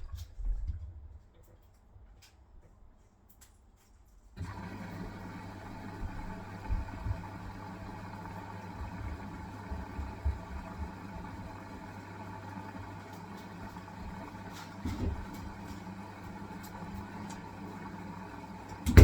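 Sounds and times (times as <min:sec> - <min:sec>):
washing machine motor hum: 0:04.4 - 0:19.0.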